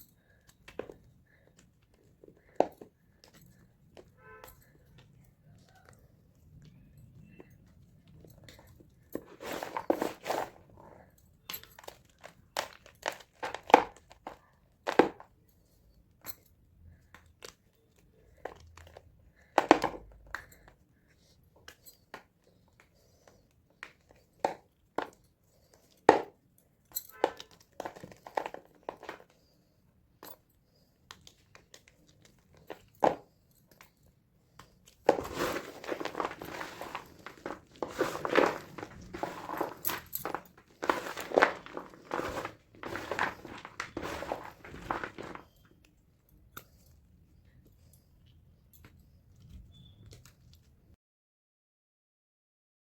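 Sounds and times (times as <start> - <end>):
chalk blocks crunching: 9.2 - 10.8, 35.0 - 45.6.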